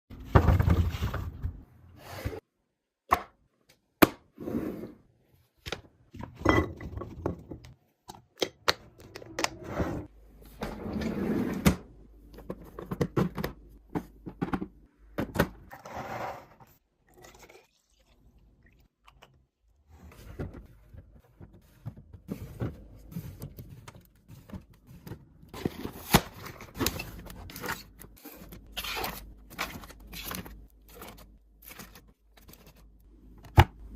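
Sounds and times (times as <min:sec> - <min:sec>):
items knocking and clunking: 0:00.1 - 0:01.7, 0:05.6 - 0:09.6, 0:11.6 - 0:15.7, 0:20.1 - 0:33.9.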